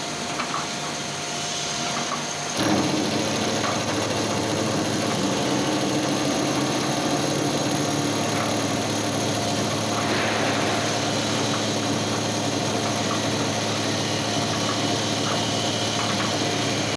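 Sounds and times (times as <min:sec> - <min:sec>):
milling machine humming: 0:02.6 - 0:16.9
brief hiss: 0:09.9 - 0:13.0.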